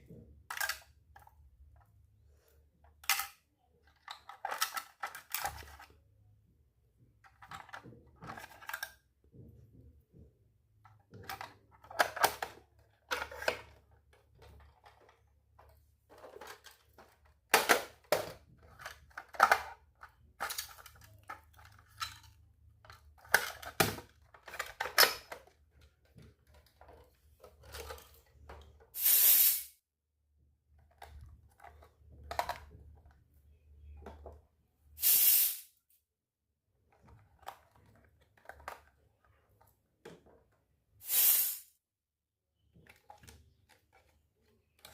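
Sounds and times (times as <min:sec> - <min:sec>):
short loud hisses: 0:29.0 - 0:29.7, 0:35.0 - 0:35.7, 0:41.0 - 0:41.7.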